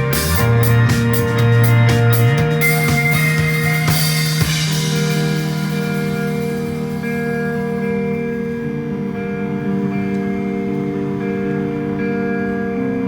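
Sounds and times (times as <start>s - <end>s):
drum hits: 0.0s - 7.8s
cymbal crash: 0.0s - 8.6s
guitar and keyboard chords: 0.0s - 13.0s.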